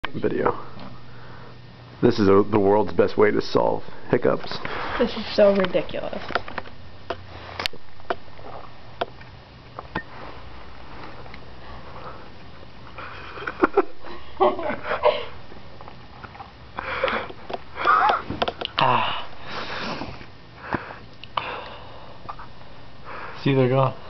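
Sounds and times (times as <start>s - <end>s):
person sniffing and gasping: 16.8s - 21.7s.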